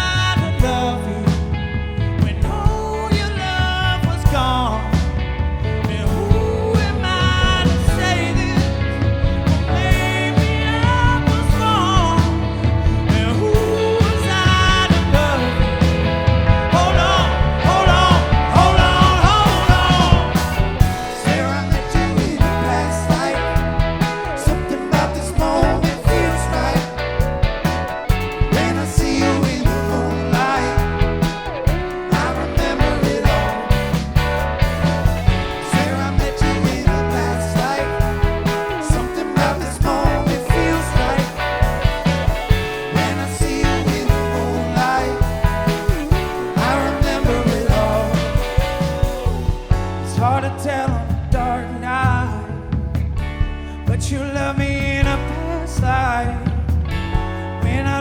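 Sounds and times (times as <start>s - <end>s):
bass line: 0.0s - 58.0s
drums: 0.0s - 58.0s
rock band playing funk music: 0.0s - 58.0s
wavering lead melody: 6.2s - 50.1s.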